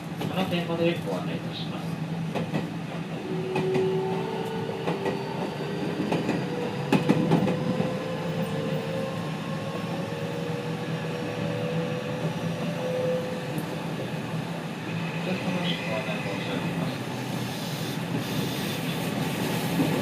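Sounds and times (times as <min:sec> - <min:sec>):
train rumble: 0:00.0 - 0:20.0
rail joint clacks: 0:02.3 - 0:07.9.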